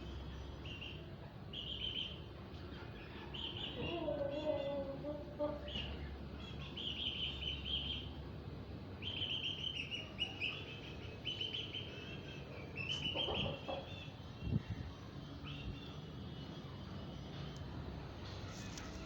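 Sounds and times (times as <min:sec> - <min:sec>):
chicks peeping: 0:00.3 - 0:08.2, 0:09.0 - 0:15.9.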